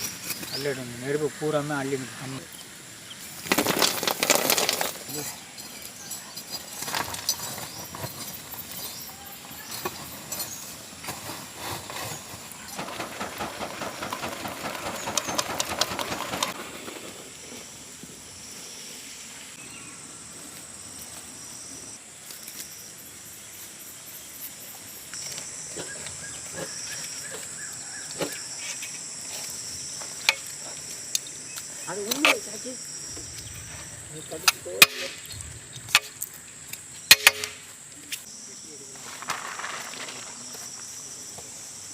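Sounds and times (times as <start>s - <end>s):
faint hiss: 0.0s - 12.8s, 16.5s - 25.6s
insects chirring: 0.0s - 41.9s
metal tool scraping embers: 4.1s - 16.6s, 31.9s - 38.3s.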